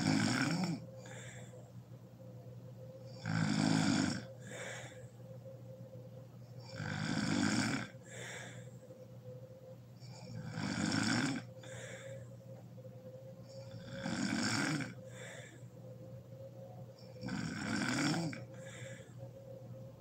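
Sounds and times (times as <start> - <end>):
woman snoring loudly: 0.0 - 1.4, 3.1 - 4.9, 6.6 - 8.6, 10.1 - 12.0, 13.5 - 15.4, 17.0 - 19.0.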